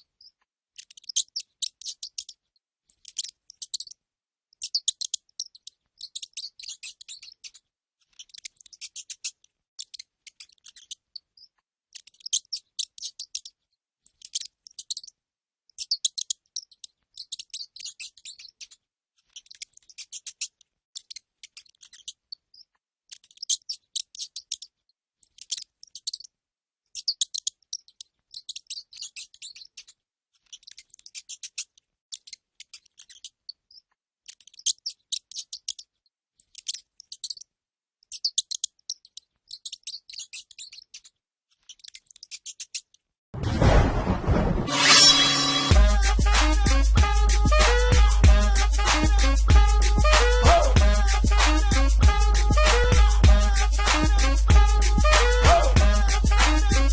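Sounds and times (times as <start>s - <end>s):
rat squeaking: 0.0s - 4.0s, 4.6s - 43.0s, 44.8s - 56.9s.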